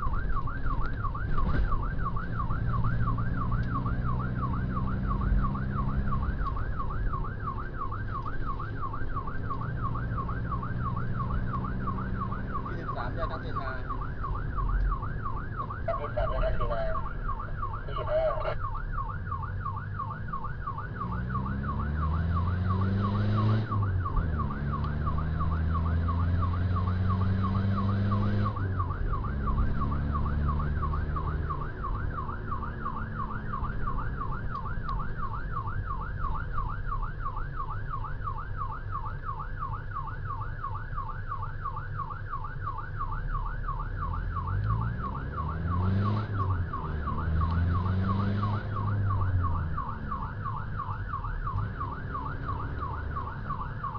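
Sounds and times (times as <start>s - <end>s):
electronic siren warbling: 0.0s - 38.8s, 40.0s - 53.9s
vehicle engine accelerating: 19.2s - 35.2s, 43.9s - 53.9s.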